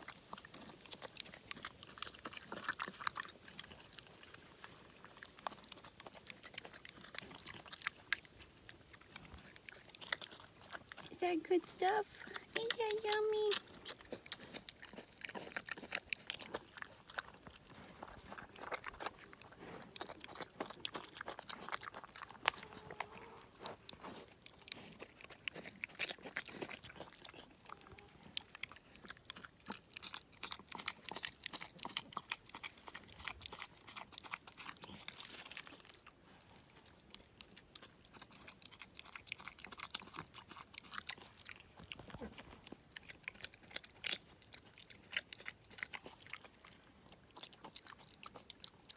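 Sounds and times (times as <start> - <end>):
wet chewing and lip-smacking: 0.0 - 48.9.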